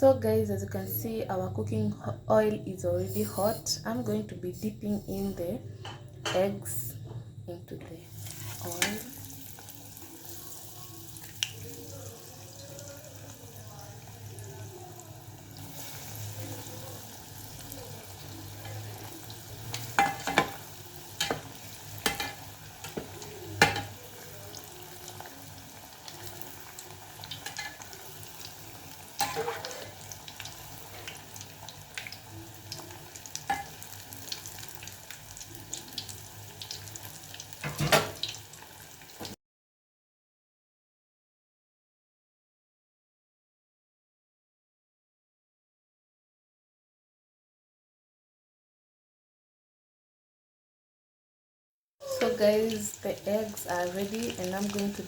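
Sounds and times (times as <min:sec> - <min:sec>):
food deep-frying in oil: 0:08.0 - 0:39.4, 0:52.0 - 0:55.0.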